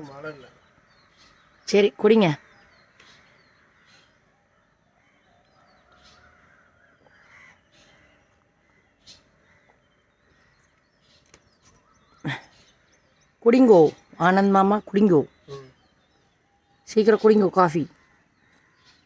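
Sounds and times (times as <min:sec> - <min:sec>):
faint crow caws: 0:00.0 - 0:13.0, 0:17.7 - 0:19.0.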